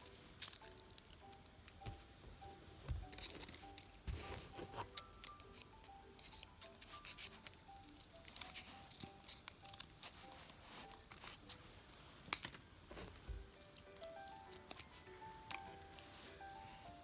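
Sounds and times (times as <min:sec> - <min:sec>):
packaging crinkling and clicks: 0:00.0 - 0:02.0, 0:03.0 - 0:16.4
soft background music: 0:00.0 - 0:17.0.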